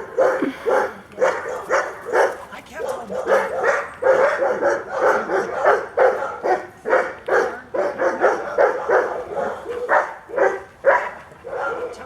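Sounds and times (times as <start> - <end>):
dog barking: 0.0 - 12.0.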